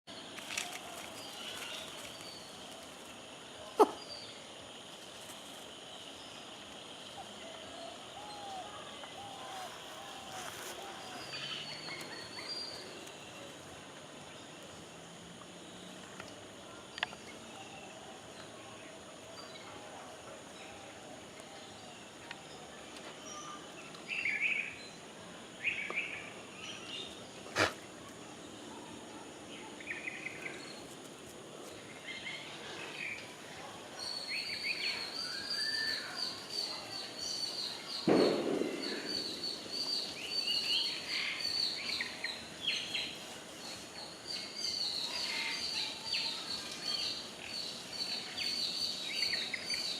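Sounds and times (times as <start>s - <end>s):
birds chirping: 28.5s - 49.9s.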